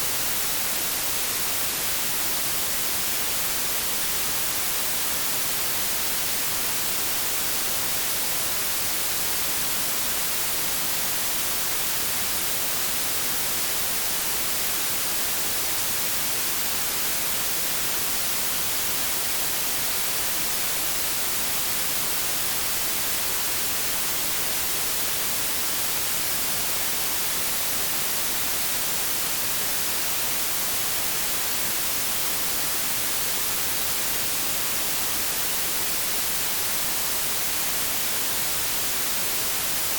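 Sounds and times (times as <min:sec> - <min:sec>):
white noise hiss: 0:00.0 - 0:39.9.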